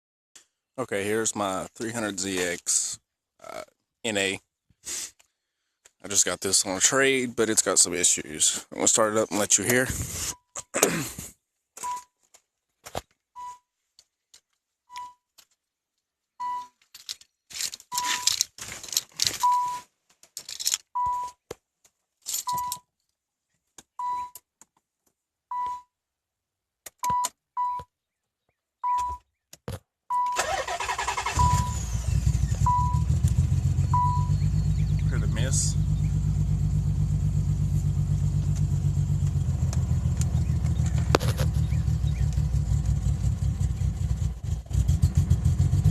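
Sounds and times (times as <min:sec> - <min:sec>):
keys jangling: 0:16.8 - 0:19.6, 0:20.3 - 0:20.9, 0:22.2 - 0:22.8
car warning chime beeping: 0:19.4 - 0:19.8, 0:25.5 - 0:25.9, 0:28.8 - 0:29.2, 0:30.1 - 0:32.0, 0:32.6 - 0:33.2, 0:33.8 - 0:35.0
car engine cranking and idling: 0:30.3 - 0:45.9.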